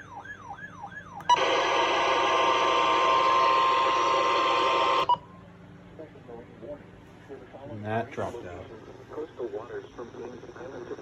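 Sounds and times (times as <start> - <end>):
wailing alarm siren: 0.0 - 5.2
radio static with steady tone: 6.0 - 11.0.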